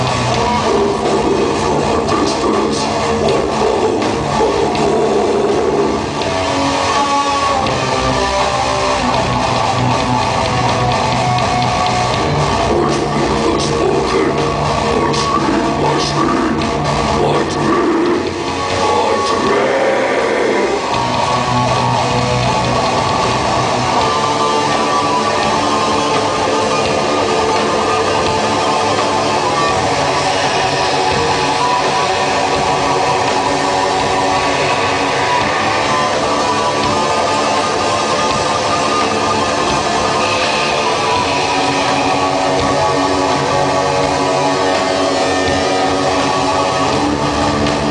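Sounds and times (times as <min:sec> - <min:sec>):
electric guitar: 0:00.0 - 0:47.9
heavy metal band playing live: 0:00.0 - 0:47.9.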